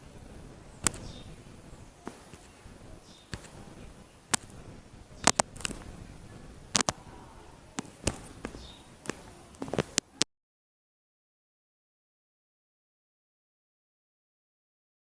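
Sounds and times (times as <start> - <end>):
faint background hiss: 0.0 - 10.2
sharp clicks and taps: 0.8 - 1.2, 2.0 - 6.0, 6.7 - 7.0, 7.8 - 10.2.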